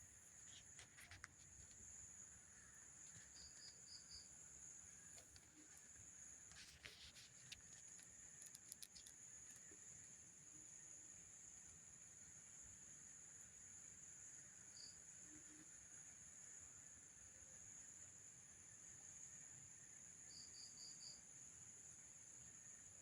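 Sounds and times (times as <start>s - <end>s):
short insect chirps: 0.0s - 22.9s
crickets trilling: 0.0s - 23.0s
soft clicks and crackles: 0.4s - 1.9s, 5.1s - 9.9s.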